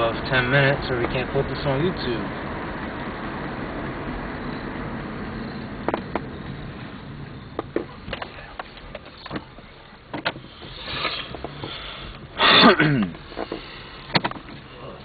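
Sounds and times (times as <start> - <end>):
car road noise: 0.0 - 15.0
light clicks and knocks: 7.5 - 12.3, 13.1 - 14.7.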